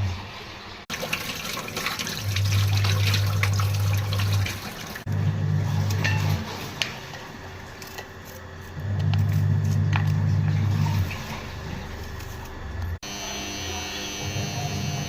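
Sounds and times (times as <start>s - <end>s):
running water: 0.0s - 7.1s.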